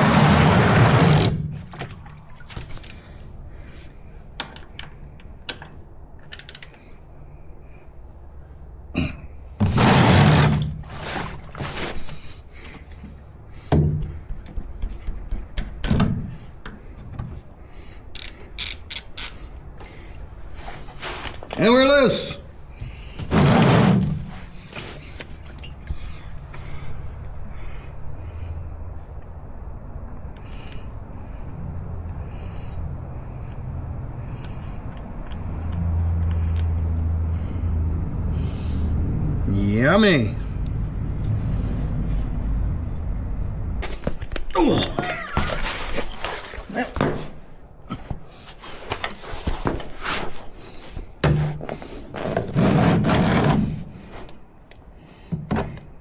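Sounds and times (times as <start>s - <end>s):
ratchet wrench clicking: 6.3s - 6.8s, 18.2s - 19.4s
vehicle engine humming: 24.5s - 44.3s.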